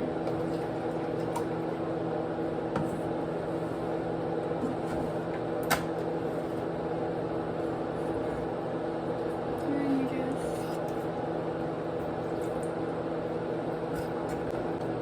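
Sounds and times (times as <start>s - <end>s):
appliance humming: 0.0s - 15.0s.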